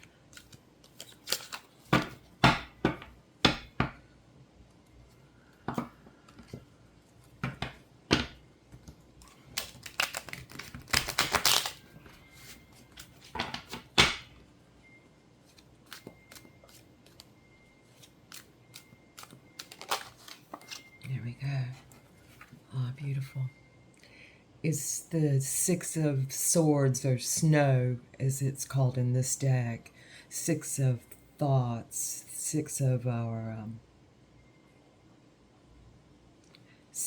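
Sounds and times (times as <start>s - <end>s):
cards being shuffled: 9.5s - 11.8s, 15.4s - 17.3s, 17.9s - 20.9s.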